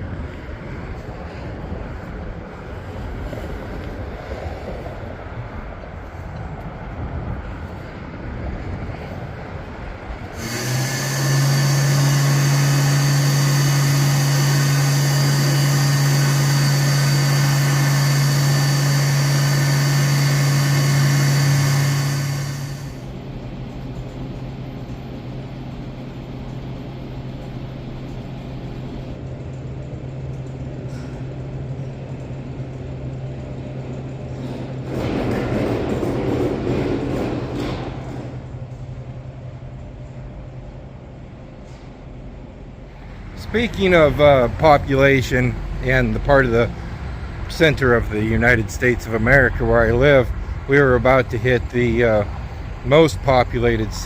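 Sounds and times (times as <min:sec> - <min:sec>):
loud low hum: 0:00.0 - 0:54.0
truck road and engine noise: 0:00.0 - 0:54.0.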